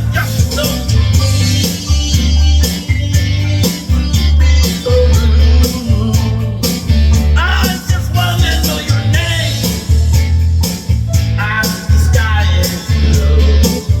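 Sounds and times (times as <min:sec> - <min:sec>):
band music with heavy bass: 0:00.0 - 0:14.0
melody bending in pitch: 0:00.6 - 0:08.5.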